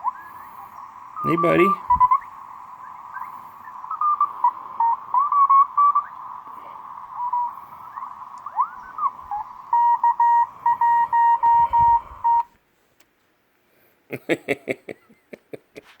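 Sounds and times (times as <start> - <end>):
steady hiss: 0.0 - 16.0
morse code beeping: 1.2 - 2.2, 7.2 - 12.5.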